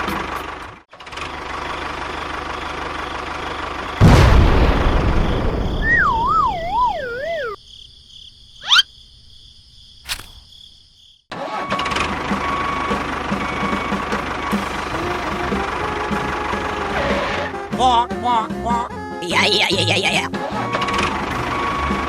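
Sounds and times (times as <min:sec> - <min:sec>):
small engine running: 0:00.0 - 0:04.0.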